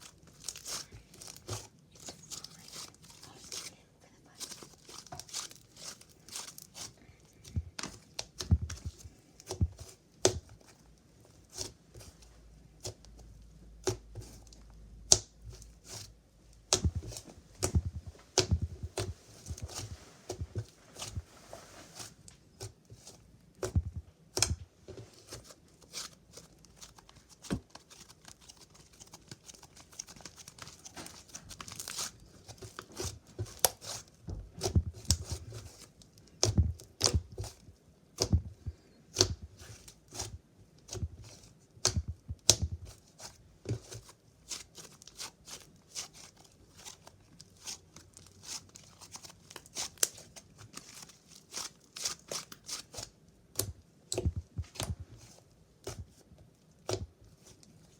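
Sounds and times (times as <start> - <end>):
slime squishing with sticky pops: 4.4 - 12.2, 12.8 - 21.4, 22.0 - 57.9
soft low thumps: 7.5 - 7.8, 8.4 - 9.9, 16.6 - 21.4, 23.6 - 24.7, 34.3 - 35.5, 36.4 - 37.5, 38.2 - 39.6, 41.0 - 43.0, 54.2 - 55.2.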